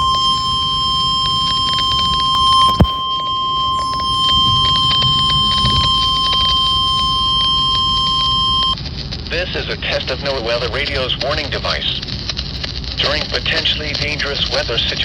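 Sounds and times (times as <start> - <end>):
high-pitched warning alarm tone: 0.0 - 8.8
light static crackle: 0.0 - 15.0.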